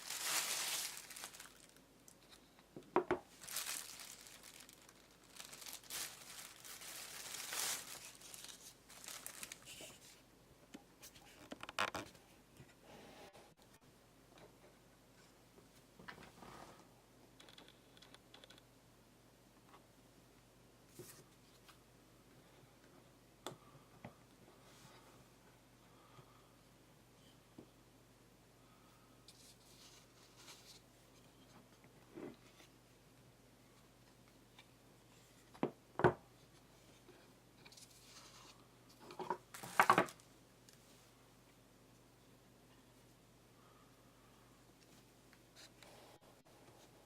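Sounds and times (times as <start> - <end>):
packaging rustling and clicks: 0.0 - 1.8, 3.3 - 9.9.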